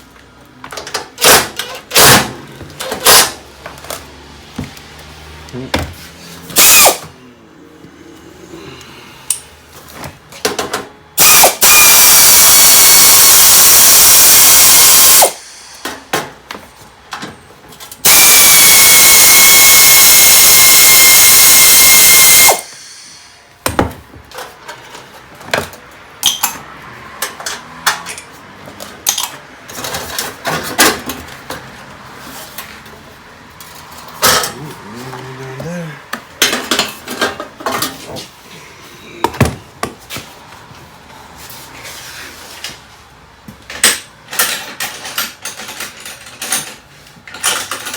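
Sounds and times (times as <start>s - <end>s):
power drill whining: 11.2s - 15.6s, 18.0s - 23.2s.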